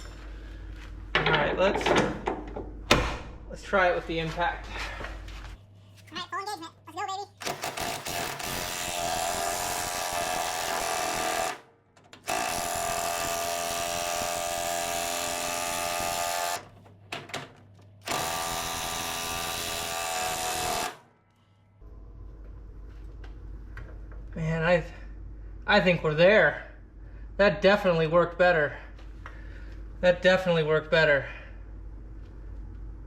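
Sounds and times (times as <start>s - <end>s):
impact wrench hammering: 1.9s - 3.6s, 7.4s - 16.6s.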